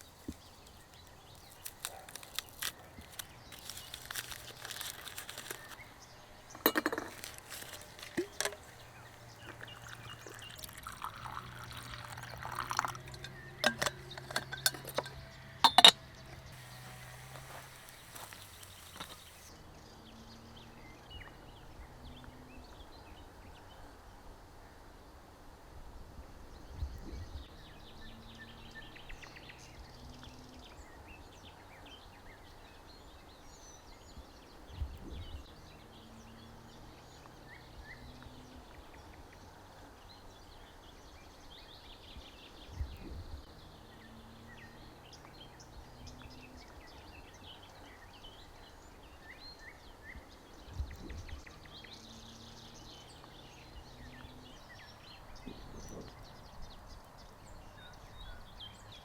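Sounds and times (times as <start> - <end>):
small birds chirping: 0.0 - 19.6.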